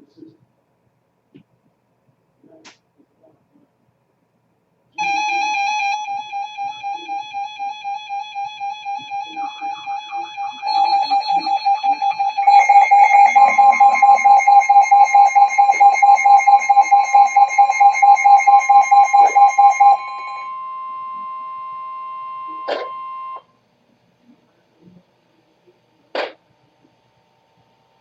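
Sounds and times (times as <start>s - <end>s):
steady alert tones: 5.0s - 20.8s
pulsing electronic beep: 5.0s - 23.4s.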